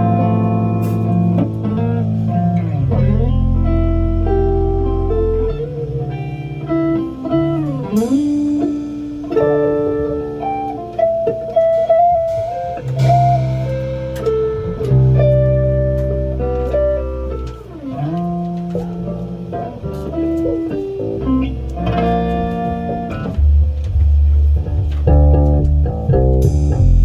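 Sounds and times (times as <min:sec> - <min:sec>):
bluesy guitar with bends: 0:00.0 - 0:27.0
low bass notes: 0:00.0 - 0:27.0.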